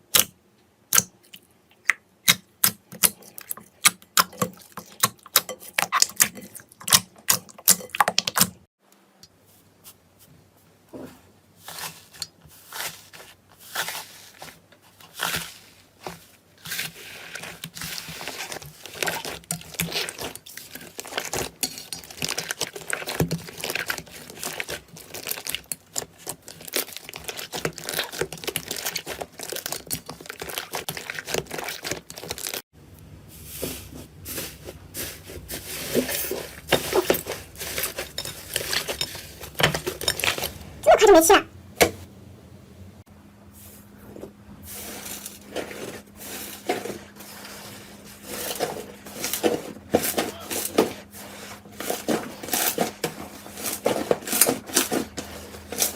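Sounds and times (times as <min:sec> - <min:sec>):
slime crackling and crinkling: 0:11.6 - 0:32.6, 0:33.3 - 0:41.1, 0:44.7 - 0:55.9.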